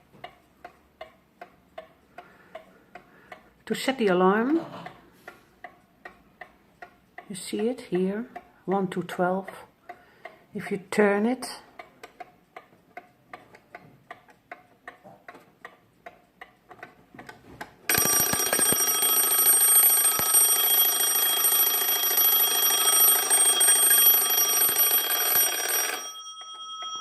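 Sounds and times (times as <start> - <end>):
alarm bell ringing: 17.9 - 27.0
alarm clock ticking: 17.9 - 27.0.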